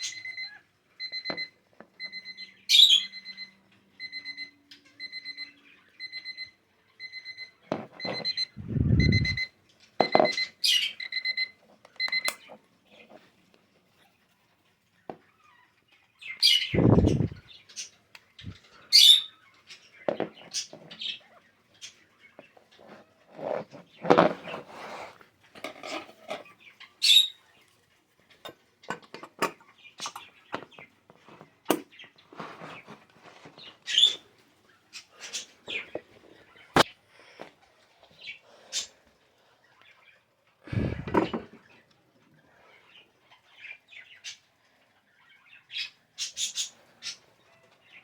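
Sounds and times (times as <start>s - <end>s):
bird chirps: 2.1s - 3.6s, 26.5s - 27.5s.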